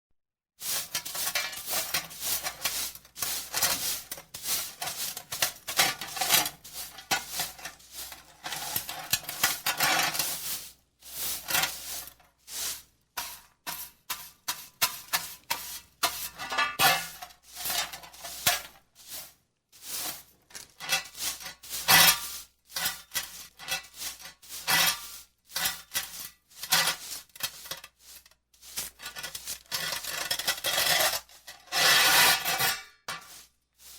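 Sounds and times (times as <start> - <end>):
metal dust pan clinking: 0.6 - 19.3, 19.9 - 31.2, 31.9 - 33.9
broom sweeping grit on concrete: 0.6 - 33.9.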